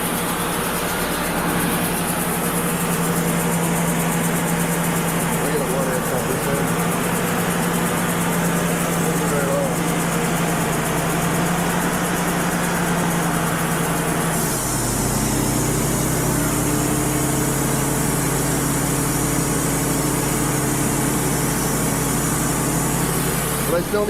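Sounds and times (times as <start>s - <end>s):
diesel engine running: 0.0s - 24.0s
saw blade hissing through log: 13.2s - 24.0s.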